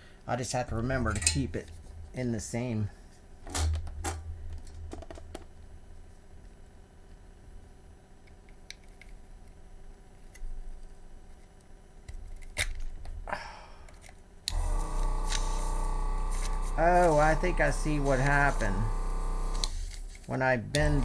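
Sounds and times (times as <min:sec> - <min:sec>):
low hum: 0:14.5 - 0:21.0.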